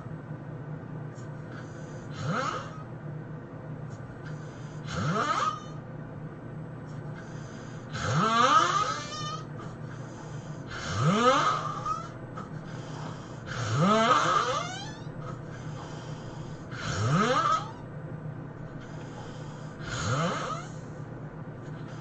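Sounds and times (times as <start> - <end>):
man snoring loudly: 1.5 - 2.8, 4.8 - 5.8, 7.8 - 9.5, 10.7 - 12.2, 13.0 - 15.0, 16.7 - 17.8, 19.2 - 20.8.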